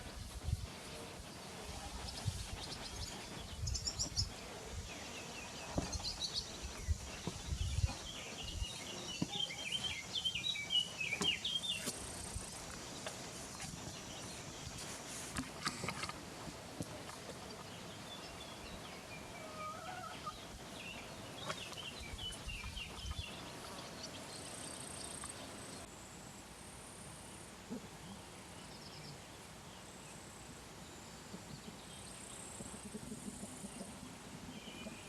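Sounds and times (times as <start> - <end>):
small birds chirping: 0.0 - 25.9
outdoor background noise: 0.0 - 35.0.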